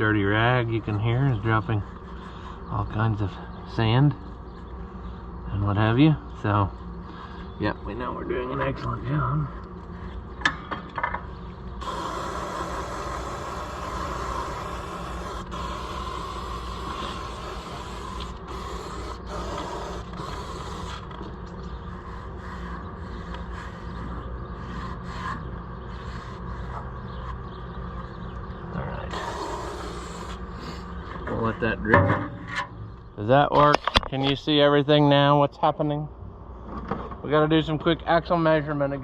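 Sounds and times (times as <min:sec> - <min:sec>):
aerosol spray can hissing: 0:11.8 - 0:21.1, 0:29.1 - 0:30.8.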